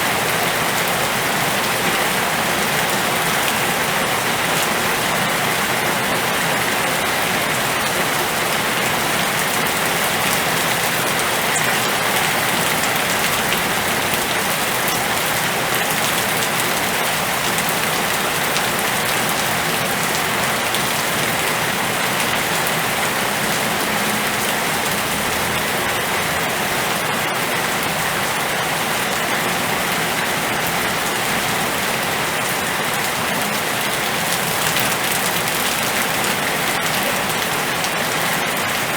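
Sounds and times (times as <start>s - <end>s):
heavy rain hissing: 0.0s - 38.9s.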